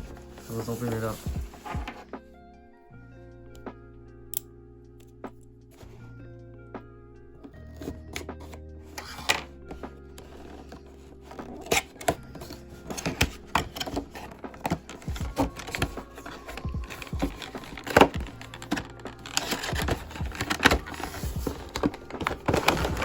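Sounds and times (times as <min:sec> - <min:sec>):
packaging clicks and rustles: 0:00.0 - 0:02.1, 0:07.4 - 0:23.0
lo-fi background music: 0:00.0 - 0:23.0.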